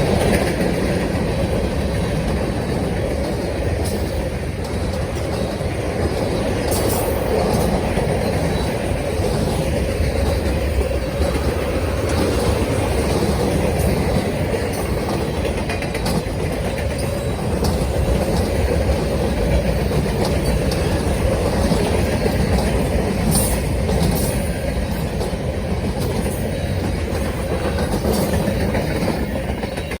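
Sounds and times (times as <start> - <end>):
freight train rumbling past: 0.0 - 30.0
light clicks from train cars: 0.0 - 30.0.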